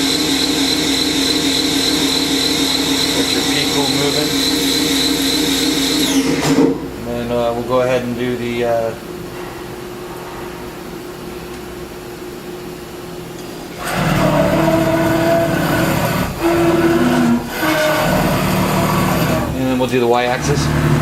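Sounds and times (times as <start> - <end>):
machine table whining traverse: 0.0 - 7.0, 13.3 - 21.0
machine hum: 0.0 - 21.0.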